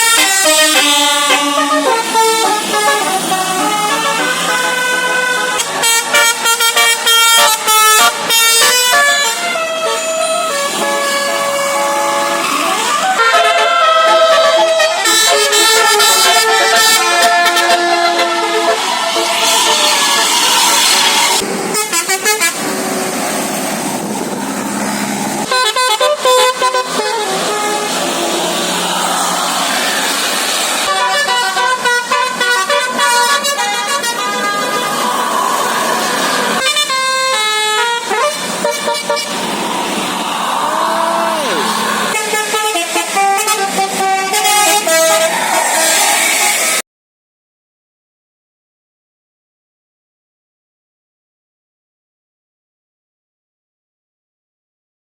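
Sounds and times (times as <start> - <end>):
short loud horn blasts: 0.0 - 22.7, 42.1 - 45.3
musical bus air horns: 0.0 - 23.2, 25.4 - 46.8
traffic and engine noise: 0.0 - 46.8.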